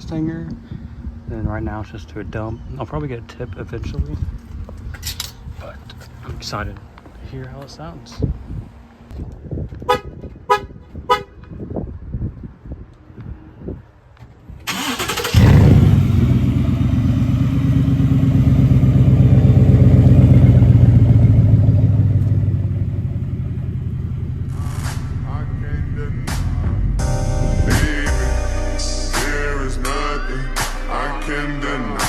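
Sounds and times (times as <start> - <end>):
starter motor cranking: 14.7 - 15.9
engine deep idle: 15.4 - 26.3.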